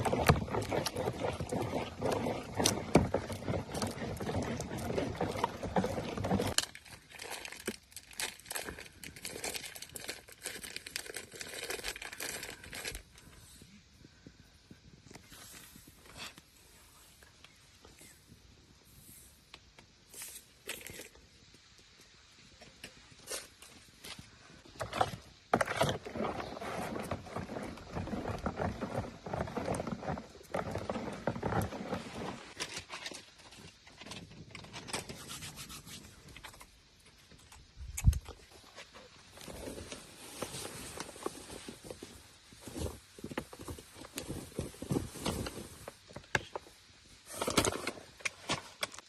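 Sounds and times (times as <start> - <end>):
scraping and rubbing: 0.0 - 6.6, 24.8 - 33.2, 34.8 - 36.4.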